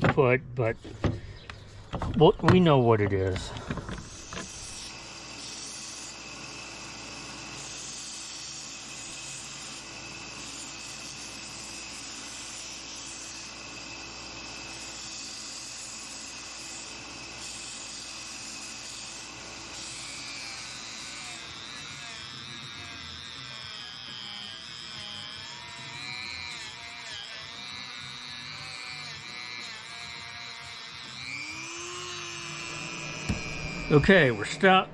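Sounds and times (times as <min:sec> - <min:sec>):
electric motor whining: 0:03.1 - 0:34.9.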